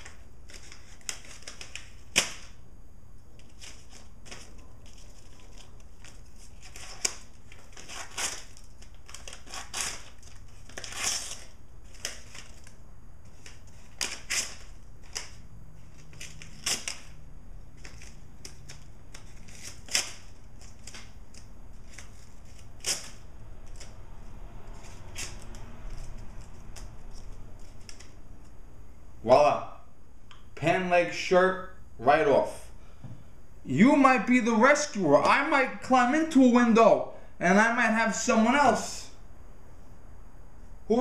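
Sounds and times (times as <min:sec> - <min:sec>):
paper crackling and crinkling: 0:00.0 - 0:02.5, 0:03.3 - 0:24.0, 0:24.6 - 0:28.5.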